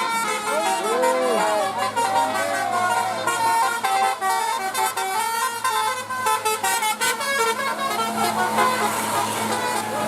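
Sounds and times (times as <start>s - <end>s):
musical bus horn tune: 0.0s - 10.0s.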